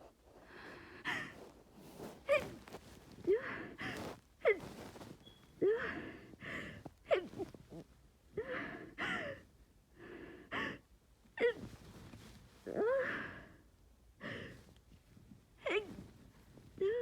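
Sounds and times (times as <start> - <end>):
breathy huffs: 5.6 - 6.9
woman gasping breaths: 5.6 - 6.9, 14.2 - 14.7.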